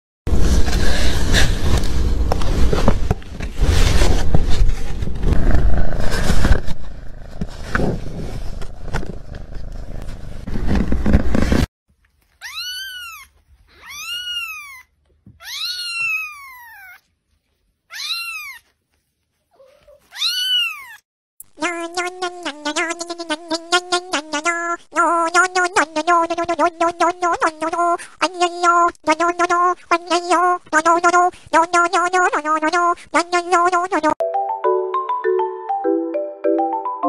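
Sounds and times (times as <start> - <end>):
loud rough noise with knocks: 0.3 - 11.7
cat meowing: 12.4 - 17.0, 17.9 - 18.7, 19.5 - 21.0.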